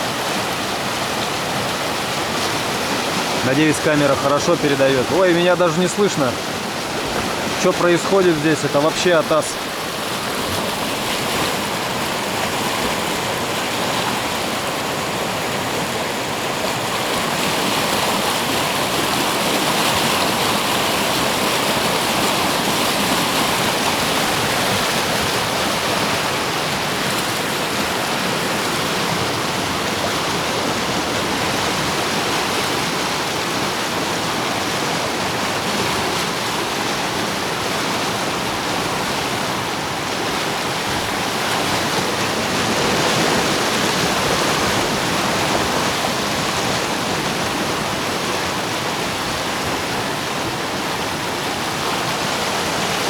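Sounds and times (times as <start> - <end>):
river rapids rushing: 0.0 - 53.0
person speaking: 3.4 - 6.4, 7.6 - 9.6.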